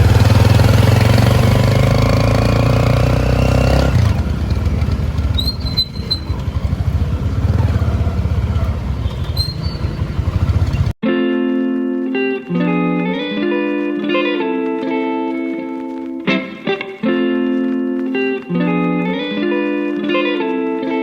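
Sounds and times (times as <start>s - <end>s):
engine running: 0.0s - 11.0s.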